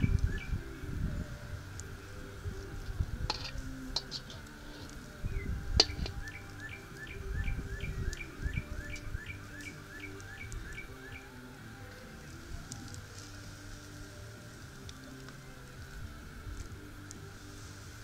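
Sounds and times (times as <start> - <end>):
bird chirping: 0.0 - 1.3, 3.3 - 15.9
campfire popping and crackling: 0.0 - 18.0.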